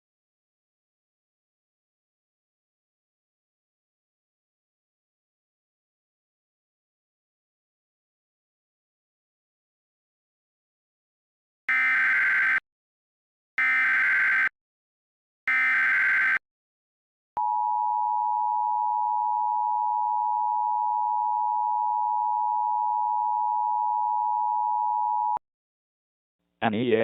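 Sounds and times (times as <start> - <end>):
buzzing digital header tones: 11.7 - 12.6, 13.6 - 14.5, 15.5 - 16.4.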